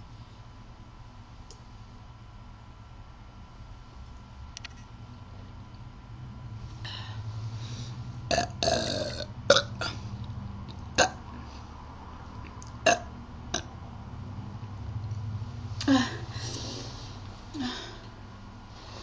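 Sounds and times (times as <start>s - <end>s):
person burping: 8.3s - 10.0s, 11.0s - 11.3s, 12.8s - 13.7s.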